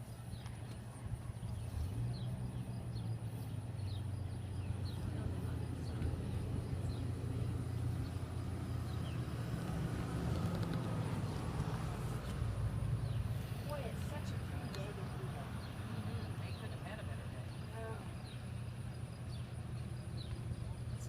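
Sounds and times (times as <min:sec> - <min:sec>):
low engine hum: 0:00.0 - 0:21.0.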